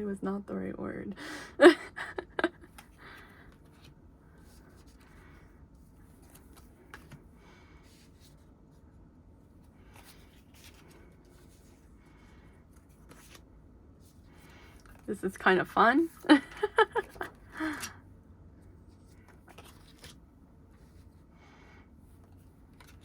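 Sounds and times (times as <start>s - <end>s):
low steady hum: 0.0s - 23.0s
paper rustling: 5.8s - 7.2s, 9.8s - 11.9s, 12.6s - 15.1s, 18.8s - 21.1s, 22.2s - 23.0s.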